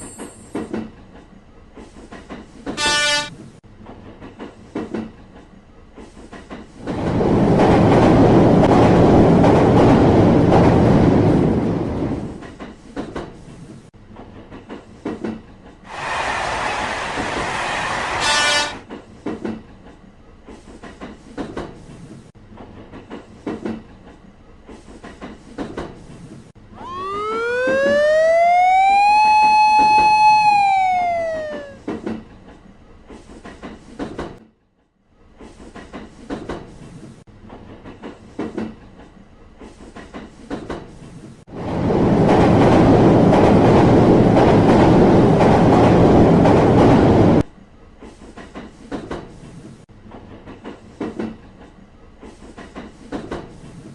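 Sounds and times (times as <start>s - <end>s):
train horn: 2.8s - 3.3s, 18.2s - 18.8s
train rushing past: 15.8s - 18.8s, 26.6s - 32.0s.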